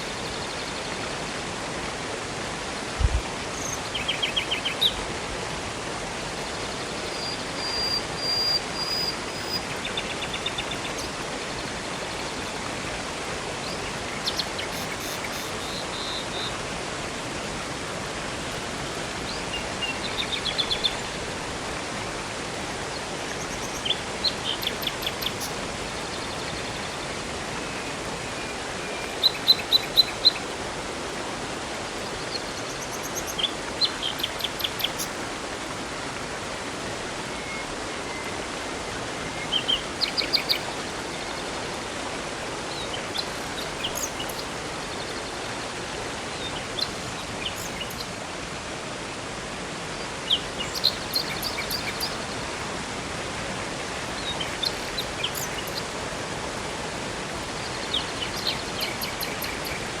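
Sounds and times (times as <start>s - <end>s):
river and waterfall rushing: 0.0s - 60.0s
songbirds chirping and trilling: 6.4s - 16.6s, 22.9s - 30.5s, 31.9s - 35.3s, 37.3s - 41.6s, 42.4s - 48.2s, 50.0s - 52.4s, 54.0s - 55.9s, 57.6s - 60.0s.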